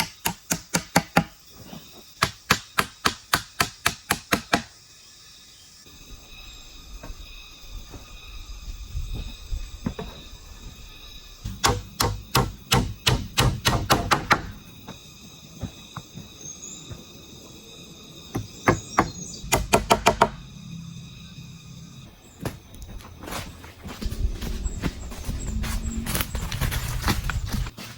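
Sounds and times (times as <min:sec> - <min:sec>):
tool knocking on bamboo: 0:11.5 - 0:14.6, 0:18.4 - 0:20.4.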